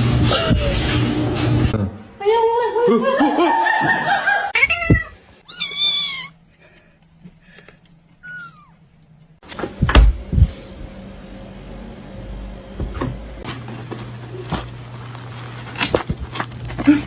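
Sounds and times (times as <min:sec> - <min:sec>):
cat meowing: 0:04.6 - 0:06.4, 0:08.2 - 0:08.8.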